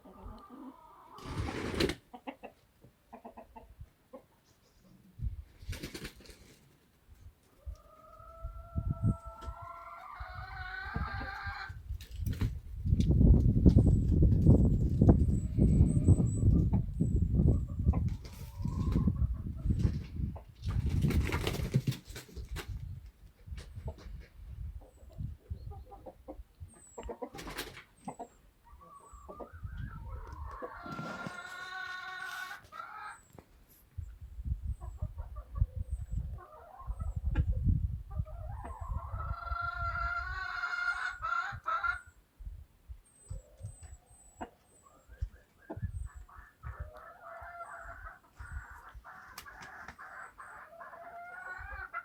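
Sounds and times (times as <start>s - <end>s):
hens clucking: 0.0s - 5.1s, 7.6s - 11.8s, 14.4s - 20.8s, 23.5s - 33.4s, 34.7s - 42.1s, 43.3s - 52.0s.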